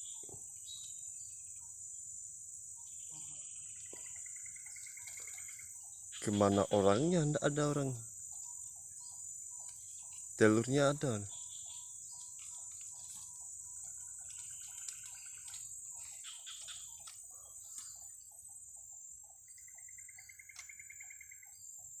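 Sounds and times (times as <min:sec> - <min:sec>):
birds trilling: 0:00.0 - 0:22.0
high insect drone: 0:00.0 - 0:22.0
short insect chirps: 0:00.0 - 0:22.0.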